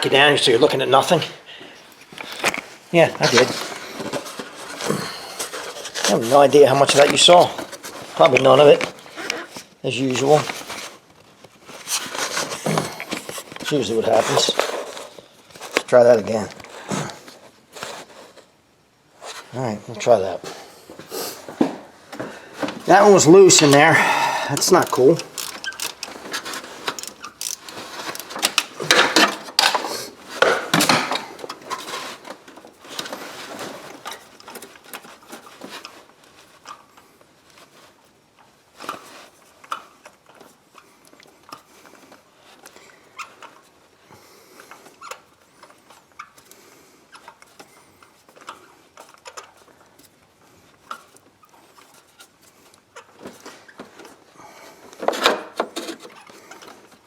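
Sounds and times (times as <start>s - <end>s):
hand tools clicking on metal: 24.5s - 29.8s.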